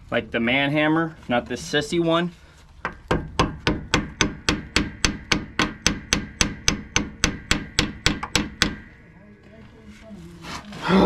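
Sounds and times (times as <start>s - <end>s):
rapid hammer blows on metal: 3.1s - 9.0s.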